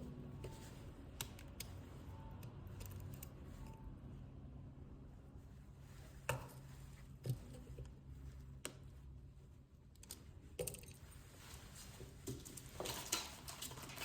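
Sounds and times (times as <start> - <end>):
faint steady hum: 0.0 - 14.0
light clicks and taps of tools: 0.4 - 3.8, 6.2 - 8.0, 8.6 - 8.9, 9.9 - 11.1.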